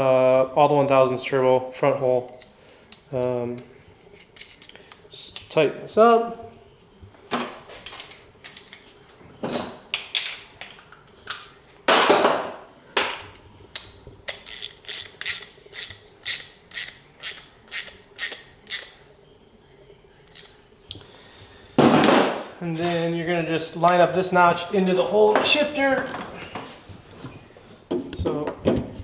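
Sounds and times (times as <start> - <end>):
ratchet wrench clicking: 14.3 - 18.9.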